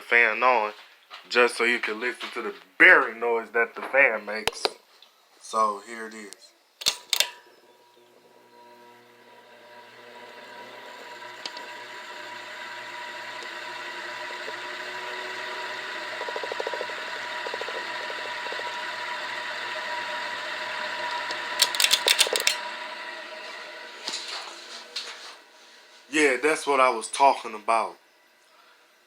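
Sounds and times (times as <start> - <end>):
ceiling fan whine: 5.2 - 29.0
loud bearing noise: 6.8 - 24.7
sharp rapid clicks: 14.4 - 19.0, 21.3 - 22.6.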